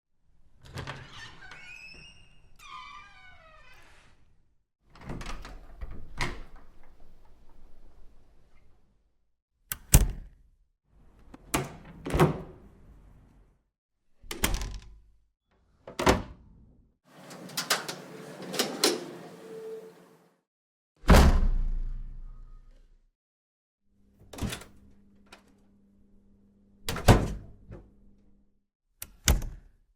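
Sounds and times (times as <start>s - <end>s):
doors opening and closing: 17.1s - 20.4s
door handle and latch clicks: 17.2s - 19.8s.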